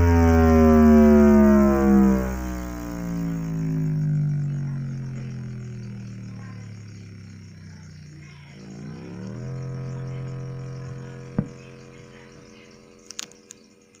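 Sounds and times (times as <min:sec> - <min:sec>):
synthetic engine revving: 0:00.0 - 0:13.8
small clicks: 0:13.0 - 0:14.0.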